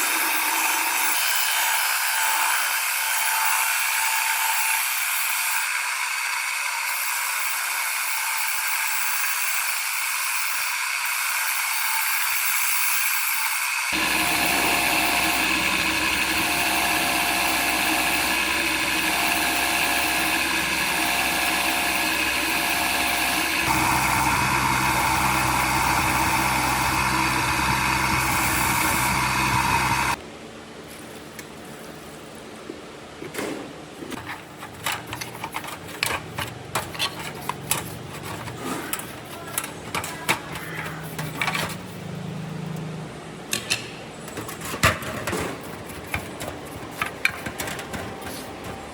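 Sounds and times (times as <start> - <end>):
power tool running: 0.0 - 30.2.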